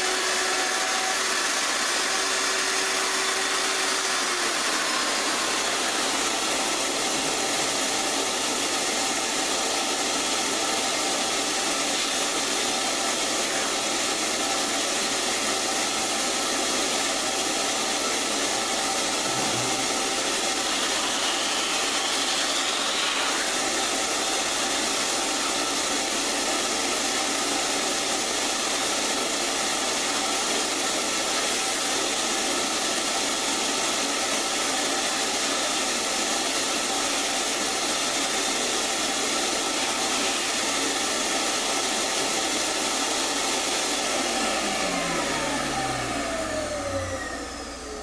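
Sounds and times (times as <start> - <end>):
power tool motor whirring: 0.0 - 28.4, 38.6 - 48.0.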